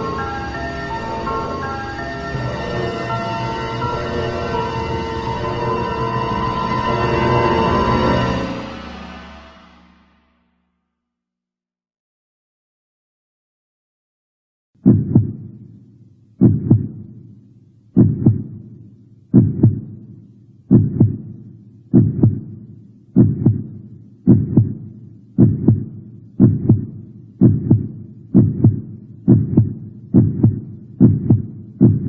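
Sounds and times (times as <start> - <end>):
heartbeat double thump: 14.8 - 15.6, 16.4 - 17.2, 18.0 - 18.7, 19.3 - 20.1, 20.7 - 32.0.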